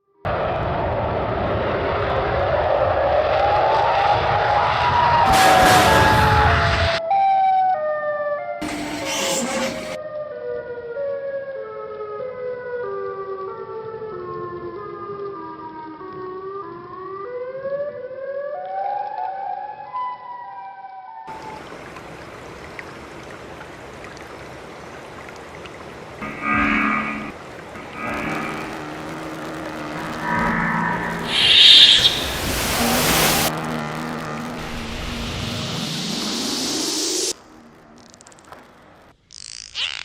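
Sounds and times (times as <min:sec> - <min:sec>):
electronic sci-fi tone: 0:08.6 - 0:10.0, 0:26.2 - 0:38.3
steady rushing noise: 0:26.2 - 0:37.4.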